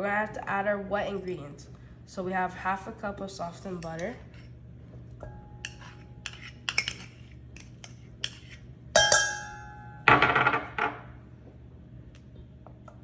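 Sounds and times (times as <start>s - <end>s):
utensils clinking against dishes: 5.2s - 9.8s
loud ringing clang: 9.0s - 11.1s.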